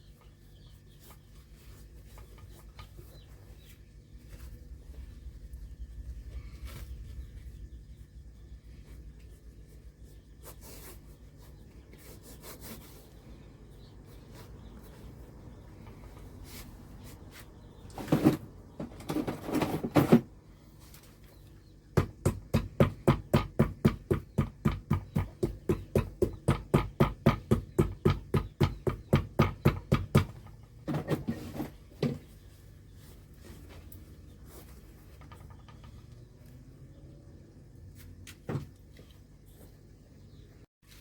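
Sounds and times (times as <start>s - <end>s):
sharp regular tapping on shoe: 22.0s - 30.4s.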